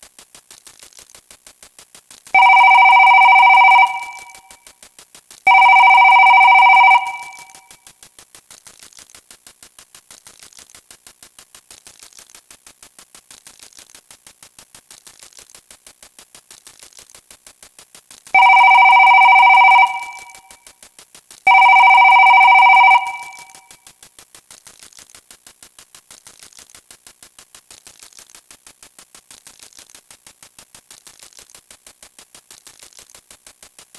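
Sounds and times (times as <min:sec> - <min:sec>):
electronic telephone ring: 0:02.4 - 0:04.5, 0:05.5 - 0:07.6, 0:18.4 - 0:20.5, 0:21.5 - 0:23.6.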